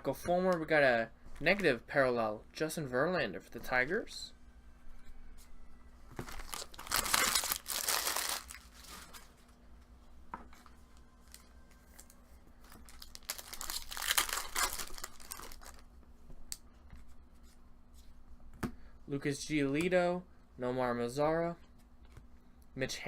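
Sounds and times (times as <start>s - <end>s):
foil wrapper tearing and crinkling: 6.3s - 9.2s, 12.8s - 15.8s.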